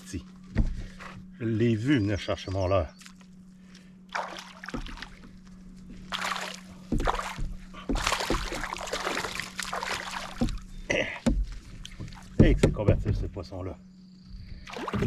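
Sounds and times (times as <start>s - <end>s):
steady low hum: 0.0s - 15.0s
fish splashing at the surface: 4.1s - 5.3s, 6.1s - 10.6s, 14.7s - 15.0s
dull knocks on canoe: 6.9s - 8.6s, 10.3s - 13.4s.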